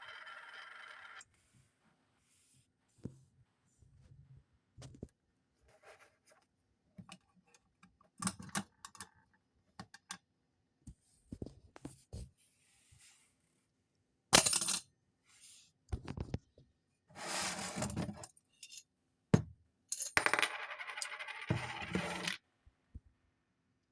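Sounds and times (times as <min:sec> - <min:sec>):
coins clattering and rattling: 0:14.4 - 0:14.8, 0:19.9 - 0:22.4.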